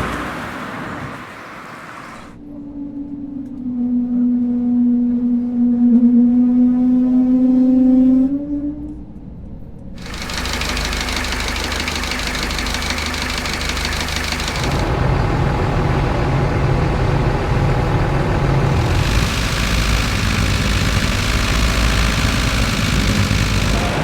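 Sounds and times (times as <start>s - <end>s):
deep engine drone: 10.0s - 24.0s
vehicle engine running: 10.0s - 24.0s.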